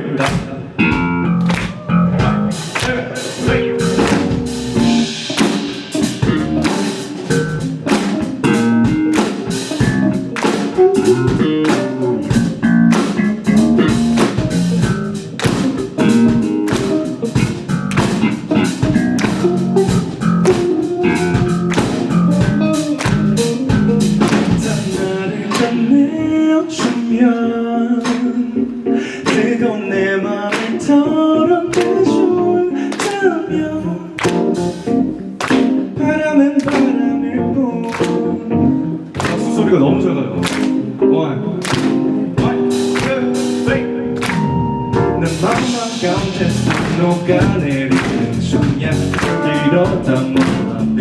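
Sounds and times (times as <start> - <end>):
electric guitar: 0.0 - 51.0
drum kit beat: 0.2 - 25.9, 26.8 - 27.1, 34.2 - 37.0, 37.8 - 38.4, 39.0 - 39.6, 40.4 - 40.8, 41.6 - 51.0.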